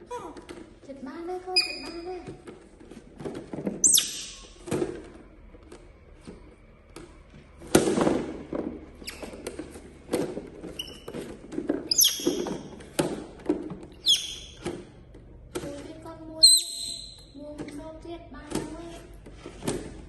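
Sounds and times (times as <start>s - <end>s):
monkey squeaking: 1.5s - 2.1s, 3.8s - 4.5s, 10.8s - 11.1s, 11.9s - 12.6s, 14.0s - 14.6s, 16.4s - 17.3s.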